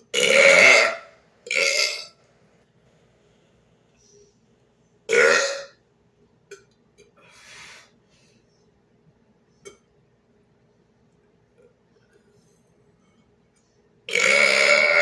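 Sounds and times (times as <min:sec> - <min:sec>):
man burping: 0:00.1 - 0:02.1, 0:05.1 - 0:05.8, 0:14.1 - 0:15.0
breathy hiss: 0:07.2 - 0:08.5.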